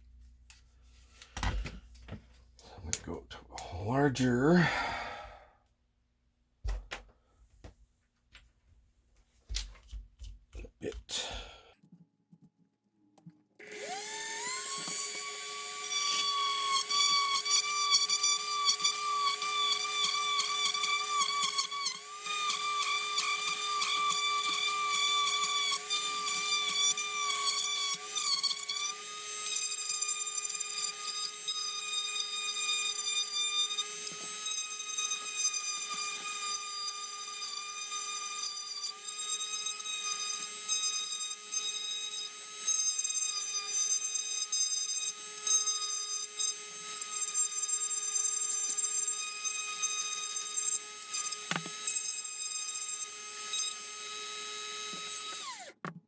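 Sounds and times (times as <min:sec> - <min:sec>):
electric drill whining: 0:13.6 - 0:55.9.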